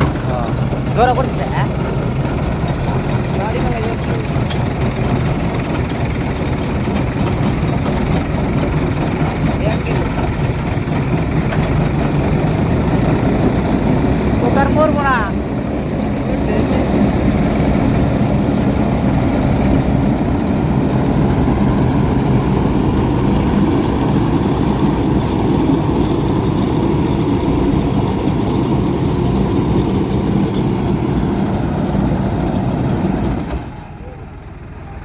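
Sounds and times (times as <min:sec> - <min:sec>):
heavy diesel engine running: 0:00.0 - 0:35.0.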